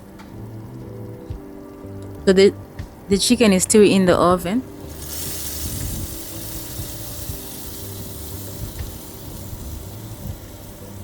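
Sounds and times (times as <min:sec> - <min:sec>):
oven fan hum: 0:00.0 - 0:11.0
chicken sizzling: 0:04.4 - 0:11.0.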